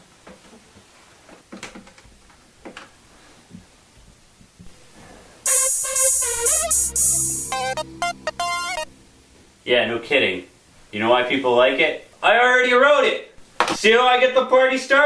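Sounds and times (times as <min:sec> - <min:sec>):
electronic ringtone: 0:05.5 - 0:09.2.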